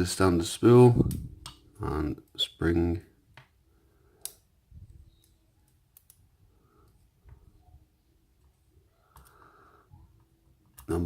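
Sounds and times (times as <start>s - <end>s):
faint clicks of lock parts: 4.2s - 4.5s, 5.1s - 7.6s, 8.4s - 9.4s.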